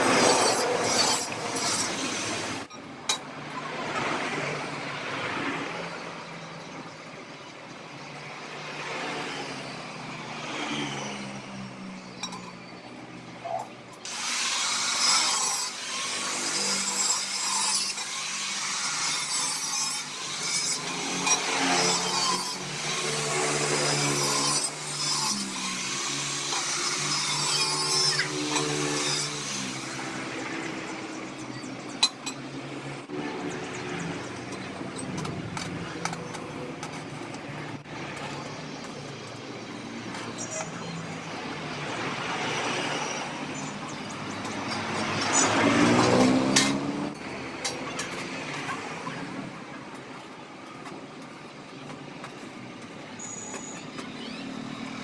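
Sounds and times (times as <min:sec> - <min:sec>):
power tool grinding sheet metal: 0:00.0 - 0:03.2, 0:14.0 - 0:31.4.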